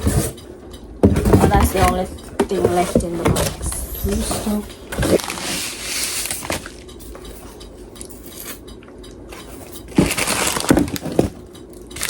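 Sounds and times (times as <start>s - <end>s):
packaging rustling: 2.9s - 6.8s, 9.6s - 11.4s.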